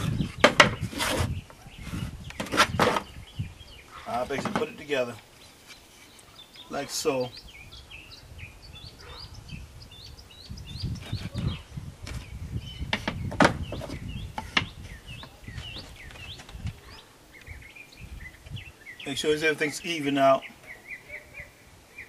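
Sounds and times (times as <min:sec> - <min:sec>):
wooden boards being handled: 0:00.0 - 0:03.1, 0:04.1 - 0:06.2, 0:12.0 - 0:16.9
songbirds chirping: 0:00.0 - 0:22.0.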